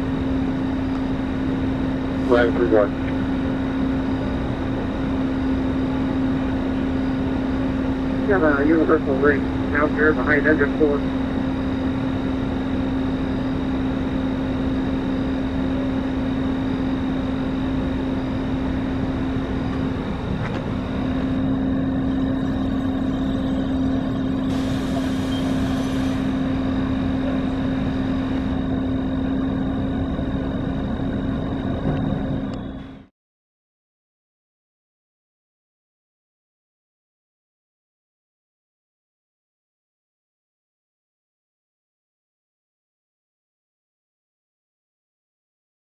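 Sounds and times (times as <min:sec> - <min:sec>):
vehicle engine droning: 0:00.0 - 0:33.1.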